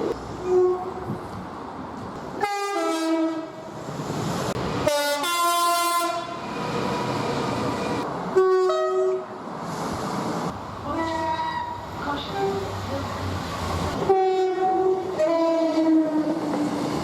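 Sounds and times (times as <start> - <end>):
moving trains: 0.0 - 17.0
two-tone train horn blasts: 2.4 - 3.5, 4.8 - 6.4, 8.4 - 9.3, 14.0 - 16.6.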